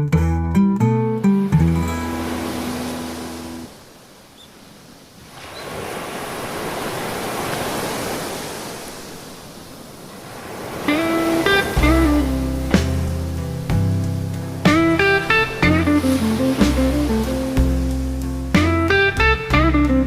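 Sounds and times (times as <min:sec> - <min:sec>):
guitar music: 0:00.0 - 0:03.7, 0:10.8 - 0:20.0
ocean wave breaking: 0:01.1 - 0:19.2.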